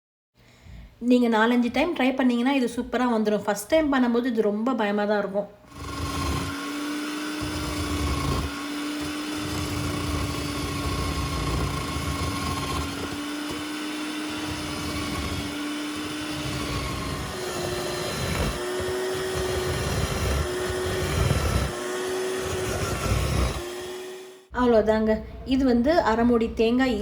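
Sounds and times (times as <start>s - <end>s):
coconut scraping on blade: 5.7s - 24.2s
coconut scraper motor whining: 5.7s - 24.5s.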